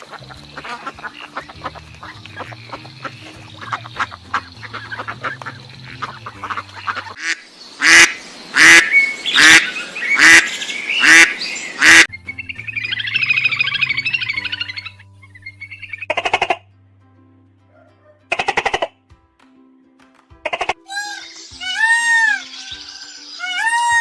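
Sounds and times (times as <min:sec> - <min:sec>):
light background music: 0:00.0 - 0:07.2, 0:11.0 - 0:24.0
plucked guitar music: 0:00.0 - 0:07.2, 0:12.1 - 0:22.9
ducks quacking: 0:00.0 - 0:12.1, 0:12.9 - 0:16.7, 0:18.3 - 0:18.9.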